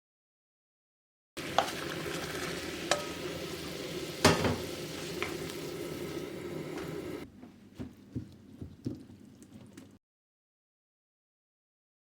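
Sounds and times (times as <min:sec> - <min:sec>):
sizzling hiss: 0:01.4 - 0:07.2.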